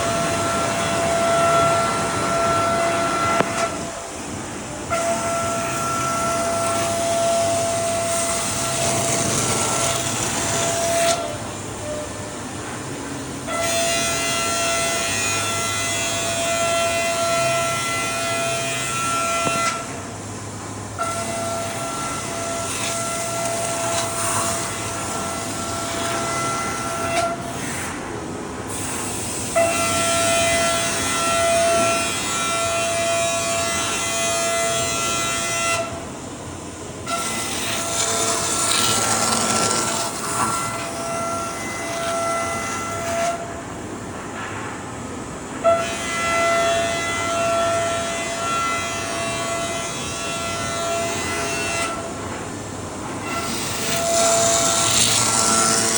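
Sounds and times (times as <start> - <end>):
milling machine spindle whine: 0.0 - 55.9.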